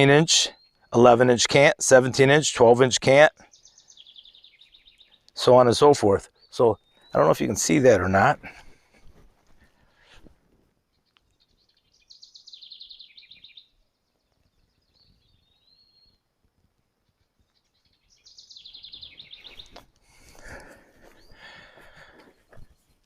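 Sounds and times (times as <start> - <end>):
songbird trilling: 3.1 - 8.1, 11.2 - 16.2, 17.7 - 19.8.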